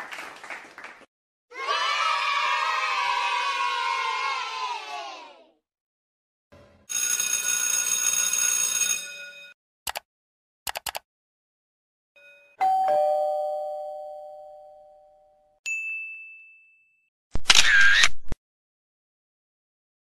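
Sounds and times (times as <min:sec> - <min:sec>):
quick clicks: 0:09.9 - 0:10.1, 0:10.7 - 0:11.1
two-note doorbell ding-dong: 0:12.2 - 0:17.1.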